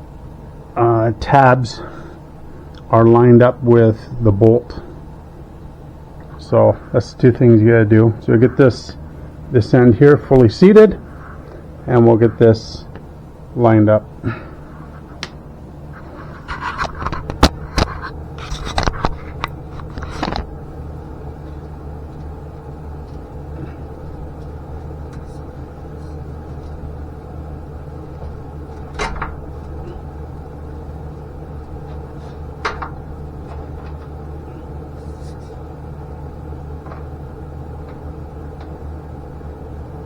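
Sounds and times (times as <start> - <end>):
steady low hum: 0.0 - 40.0
metal clanks and knocks: 28.8 - 30.0.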